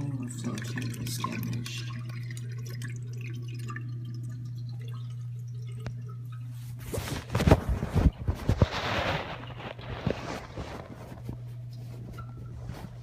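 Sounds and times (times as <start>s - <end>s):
water dripping in toilet tank: 0.0s - 6.8s, 11.6s - 12.6s.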